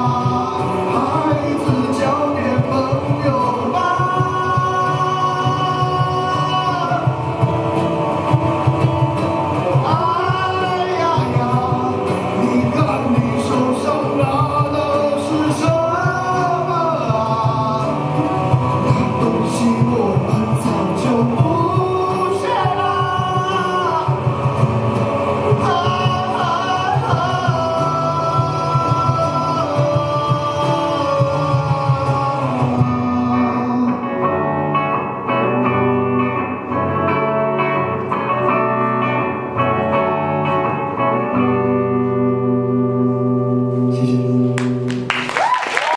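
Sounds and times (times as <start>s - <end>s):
cajon drumming: 0.0s - 33.8s
man singing: 0.0s - 35.1s
guitars playing: 0.0s - 45.4s.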